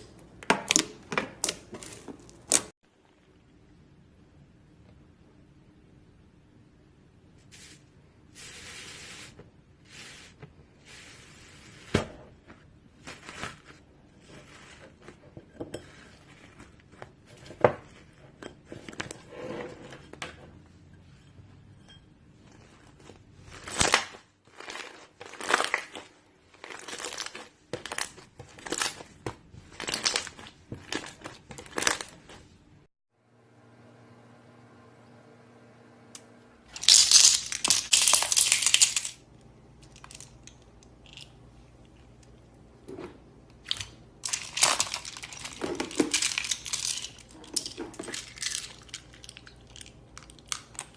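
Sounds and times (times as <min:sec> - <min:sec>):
slime squishing and crackling: 0:22.6 - 0:32.5.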